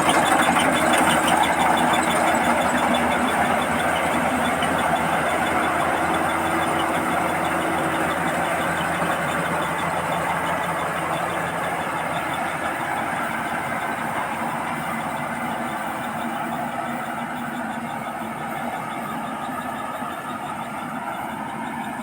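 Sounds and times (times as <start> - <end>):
combine harvester running: 0.0 - 22.0.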